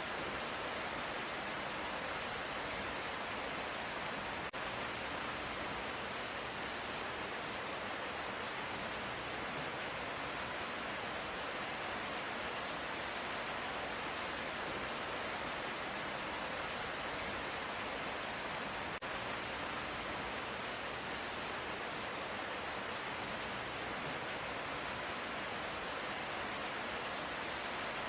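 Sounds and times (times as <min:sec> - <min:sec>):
light rain falling: 0:00.0 - 0:28.0.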